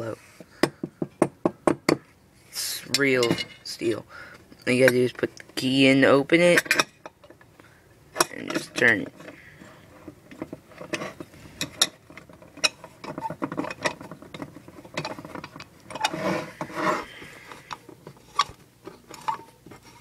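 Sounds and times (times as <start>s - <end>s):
metallic clicks and scraping: 6.4s - 20.0s.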